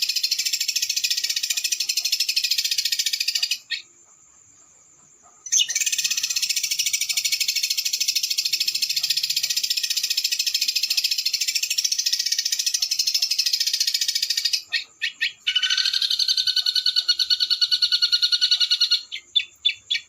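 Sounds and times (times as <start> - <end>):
songbird fast rolling trill: 5.4 - 20.0.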